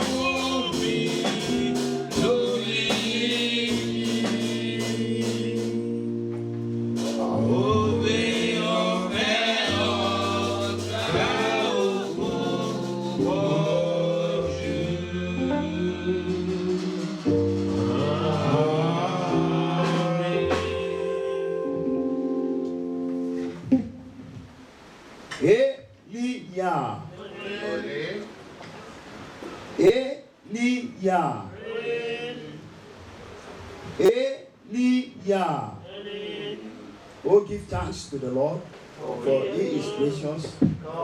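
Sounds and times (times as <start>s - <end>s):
percussion beat: 0.0s - 5.6s, 8.2s - 14.7s
gospel singing: 0.0s - 22.7s, 27.0s - 28.6s, 30.5s - 33.2s, 33.9s - 37.4s, 38.8s - 41.0s
keyboard chords and bass: 0.0s - 24.2s.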